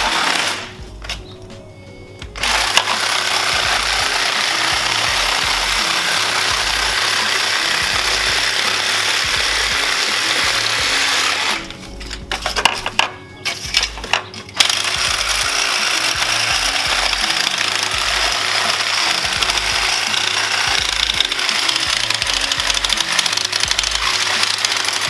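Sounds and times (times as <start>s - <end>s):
reciprocating saw cutting metal: 0.0s - 1.3s, 2.4s - 25.0s
metal knocks and clanks: 11.7s - 17.3s.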